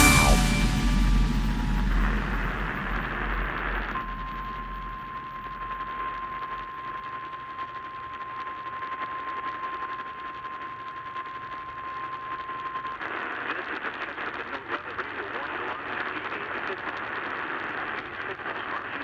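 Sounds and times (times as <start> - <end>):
steady alarm beep: 0.0 - 6.6
radio static hiss: 12.9 - 19.0.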